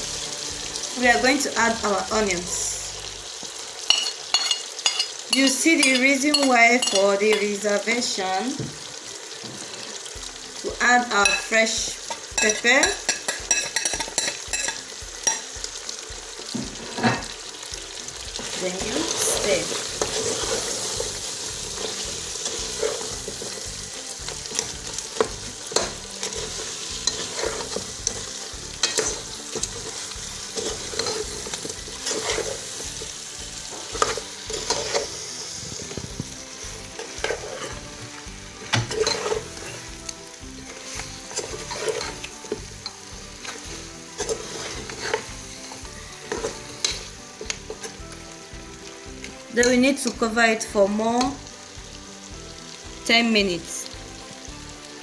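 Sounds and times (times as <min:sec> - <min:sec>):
sauce hissing: 0:18.6 - 0:47.9
spoon scraping a pot: 0:19.1 - 0:23.6, 0:24.4 - 0:33.1, 0:33.7 - 0:36.3, 0:36.9 - 0:37.8, 0:38.9 - 0:39.9, 0:40.8 - 0:45.4, 0:46.2 - 0:48.0.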